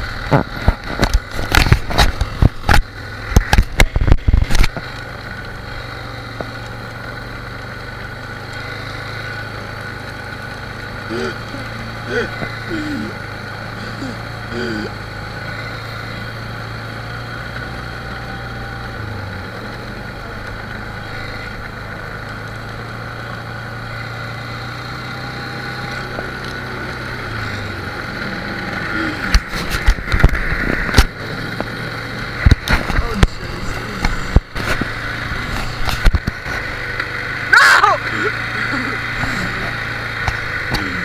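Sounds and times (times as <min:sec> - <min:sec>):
atv engine running: 0:00.0 - 0:41.0.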